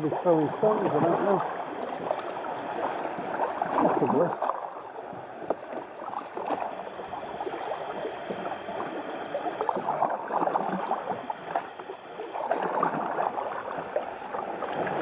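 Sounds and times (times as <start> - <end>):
water splashing around kayak: 0.0 - 15.0.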